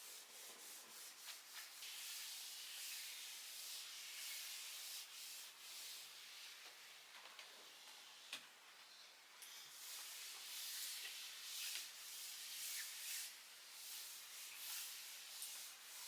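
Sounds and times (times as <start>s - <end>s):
cloth wiping laptop casing: 9.8s - 16.0s.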